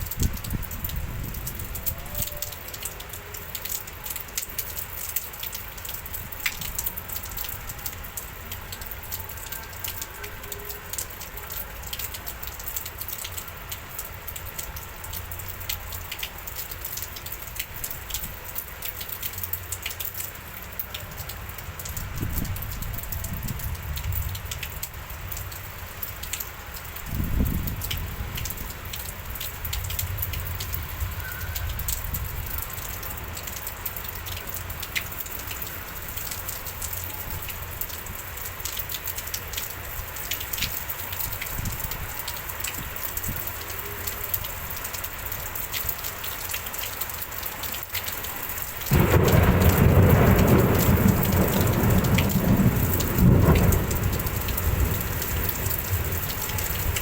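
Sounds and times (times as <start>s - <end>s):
rain drops ticking: 0.0s - 57.0s
thunder rumble: 48.9s - 57.0s.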